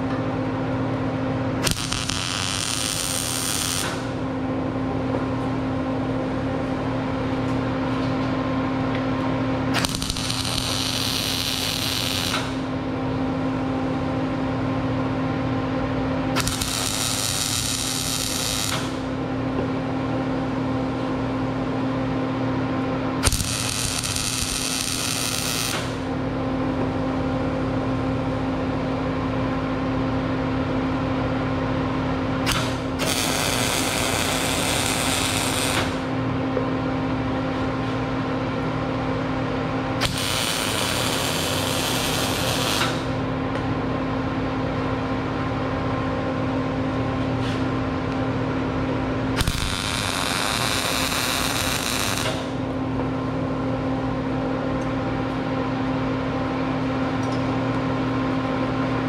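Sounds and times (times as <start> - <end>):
electrical hum: 0.0 - 59.0
arc welding crackling hiss: 1.6 - 4.2, 9.8 - 12.7, 16.4 - 19.0, 23.2 - 26.0, 32.5 - 36.0, 40.0 - 43.2, 49.4 - 52.6.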